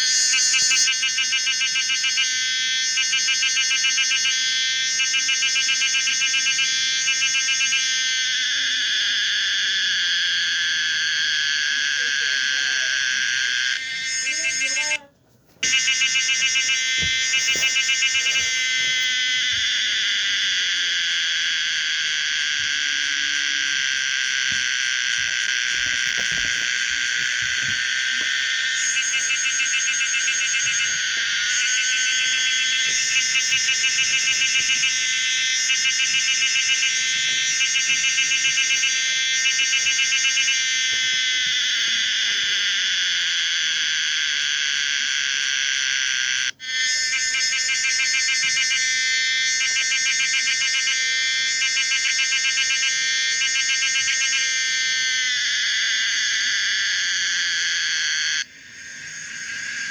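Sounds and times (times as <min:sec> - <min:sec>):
cicada buzzing and pulsing: 0:00.0 - 0:15.0, 0:15.6 - 0:59.9.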